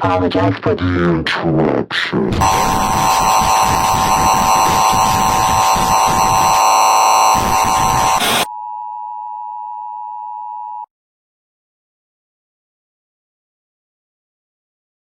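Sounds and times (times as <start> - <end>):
loud static: 2.4 - 8.5
shrill tones: 2.4 - 8.5
steady test tone: 2.4 - 8.5.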